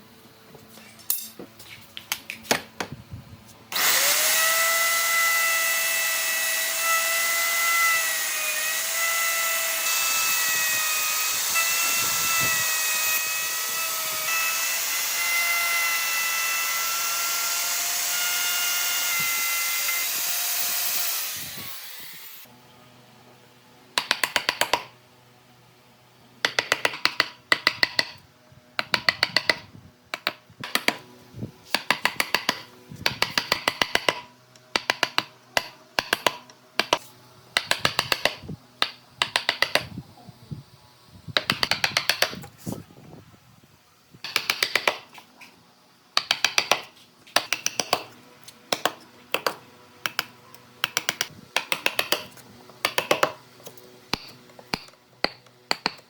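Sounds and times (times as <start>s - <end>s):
electric power tool whining: 3.7s - 22.5s.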